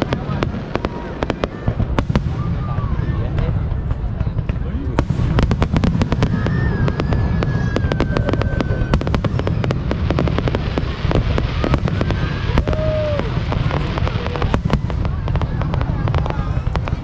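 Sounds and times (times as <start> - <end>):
fireworks bangs and crackles: 0.0 - 17.0
firework whistle: 5.0 - 17.0.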